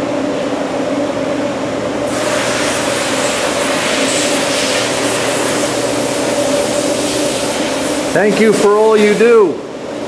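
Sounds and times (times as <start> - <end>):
factory machinery hum: 0.0 - 10.0
hiss: 2.1 - 9.2.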